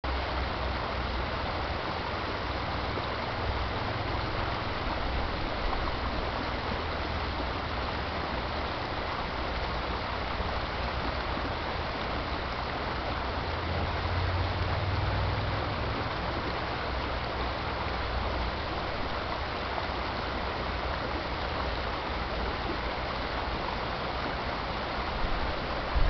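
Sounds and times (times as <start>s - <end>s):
creek flowing over rocks: 0.0s - 26.0s.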